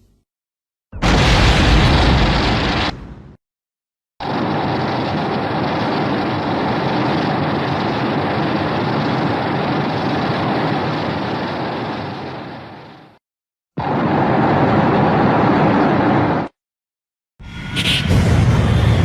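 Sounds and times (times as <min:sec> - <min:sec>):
steady rushing noise: 0:17.5 - 0:19.0.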